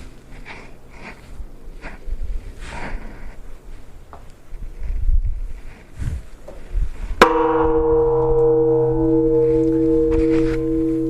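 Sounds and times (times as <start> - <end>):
large temple bell humming: 7.2 - 11.0.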